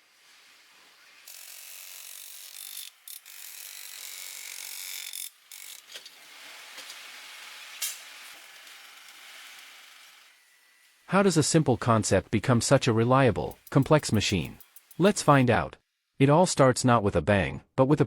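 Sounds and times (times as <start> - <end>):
hissy workshop machine noise: 0.0 - 15.4.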